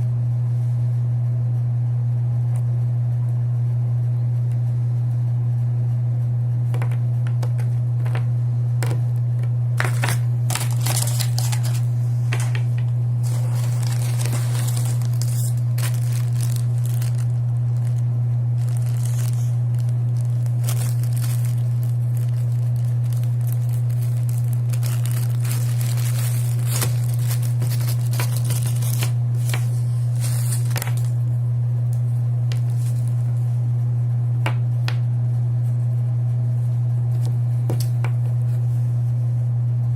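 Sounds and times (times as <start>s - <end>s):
loud steady low hum: 0.0s - 39.9s
plastic packaging crinkling and tearing: 9.8s - 12.6s, 13.2s - 31.2s, 32.5s - 33.3s.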